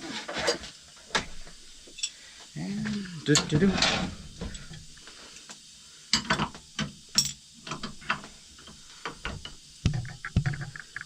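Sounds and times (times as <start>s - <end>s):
tools clicking and knocking: 6.2s - 11.0s.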